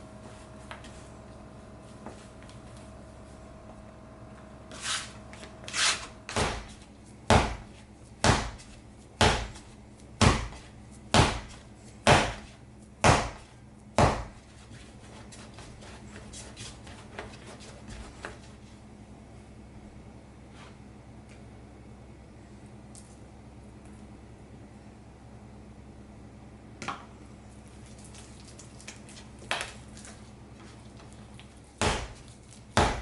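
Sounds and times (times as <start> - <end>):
soft dough handling: 0.0 - 21.5, 27.2 - 32.8
dough slapped on work surface: 6.3 - 14.4, 31.8 - 33.0.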